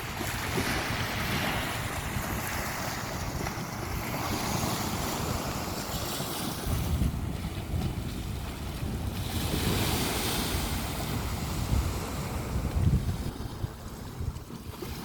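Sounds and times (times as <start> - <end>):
waves washing onto beach: 0.0 - 15.0
wind rumbling on microphone: 0.0 - 15.0.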